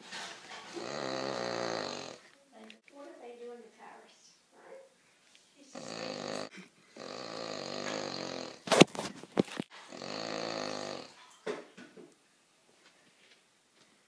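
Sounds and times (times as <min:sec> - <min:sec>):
dog snoring: 0:00.6 - 0:02.2, 0:05.7 - 0:08.6, 0:09.9 - 0:11.2.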